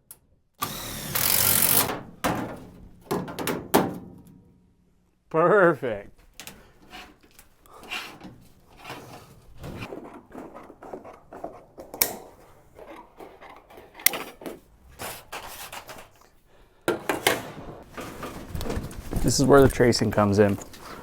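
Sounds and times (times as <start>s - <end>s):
knocks scrapes and rubbing: 6.8s - 16.4s, 17.0s - 21.0s.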